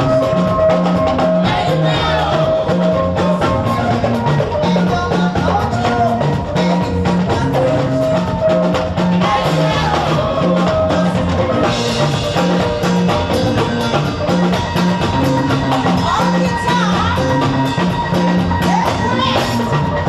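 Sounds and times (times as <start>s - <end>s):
music with drum beat and bass: 0.0s - 20.0s.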